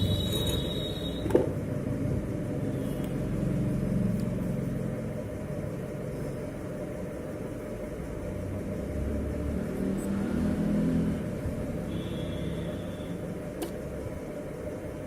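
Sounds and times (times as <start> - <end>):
high steady tone: 0.0 - 1.4, 11.7 - 13.4.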